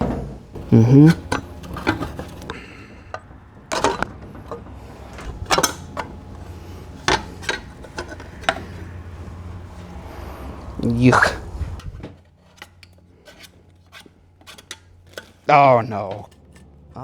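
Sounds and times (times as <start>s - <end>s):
tools knocking on metal engine: 0.0s - 12.1s
steady low hum: 0.0s - 17.0s.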